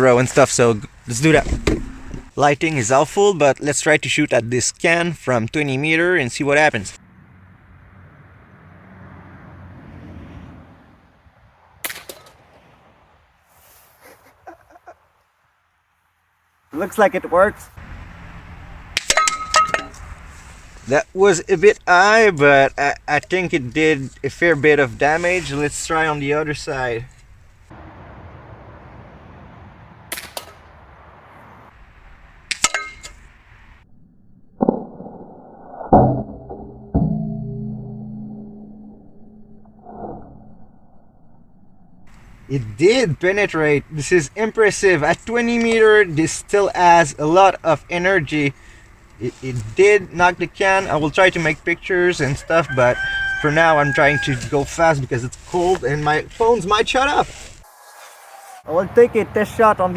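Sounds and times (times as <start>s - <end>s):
air pistol shot crack: 11.8s - 12.4s, 30.1s - 30.7s
air pistol firing pop: 30.1s - 30.6s.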